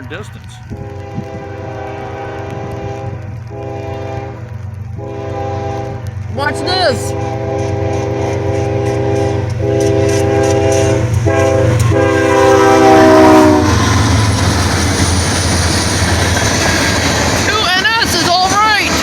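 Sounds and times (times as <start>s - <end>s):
train wheel clatter: 0.0s - 19.0s
locomotive air horn: 0.7s - 14.2s.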